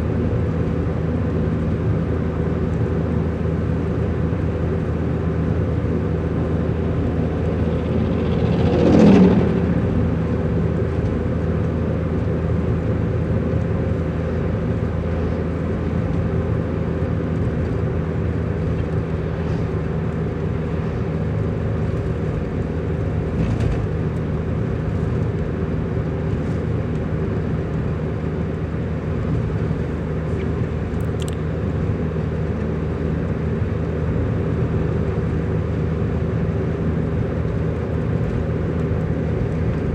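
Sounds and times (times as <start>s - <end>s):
road noise: 0.0s - 39.9s
vehicle engine drone: 0.0s - 39.9s
passing vehicle whoosh: 6.8s - 11.0s.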